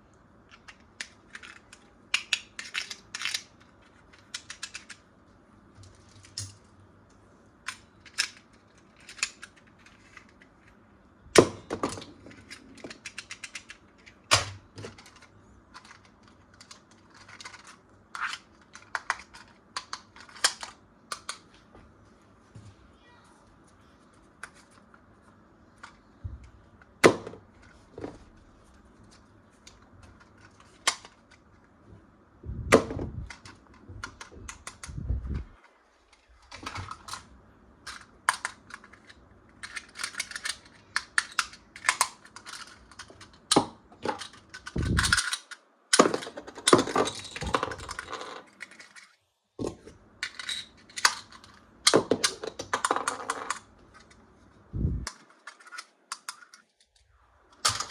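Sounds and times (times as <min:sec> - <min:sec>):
plastic toys clicking and tapping: 0:00.4 - 0:05.1, 0:07.6 - 0:10.8, 0:11.4 - 0:21.5, 0:29.1 - 0:31.5, 0:33.2 - 0:35.4, 0:36.1 - 0:54.2, 0:55.1 - 0:57.9.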